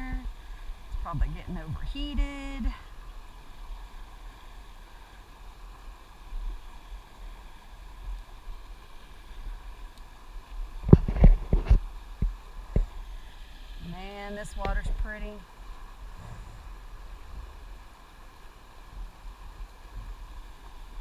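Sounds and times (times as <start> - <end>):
river water rushing: 11.8 - 21.0.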